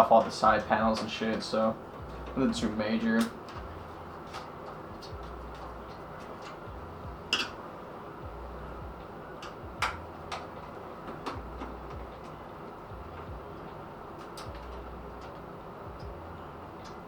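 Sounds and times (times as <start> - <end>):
steady low hum: 0.0 - 17.0
computer case panels clicking: 0.1 - 1.6, 9.4 - 12.4.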